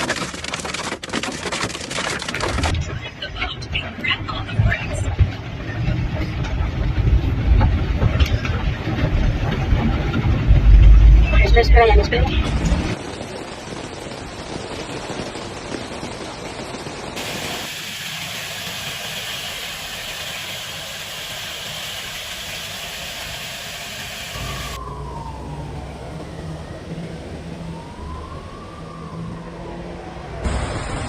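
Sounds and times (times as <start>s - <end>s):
vehicle engine hum: 2.2s - 13.0s, 17.2s - 28.2s
steady rushing hiss: 12.9s - 24.8s
emergency vehicle siren wailing: 23.8s - 31.0s.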